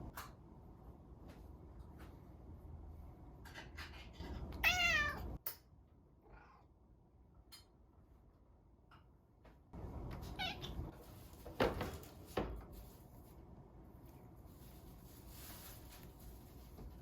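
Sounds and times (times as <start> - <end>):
cat meowing: 4.6 - 5.4, 10.2 - 10.9.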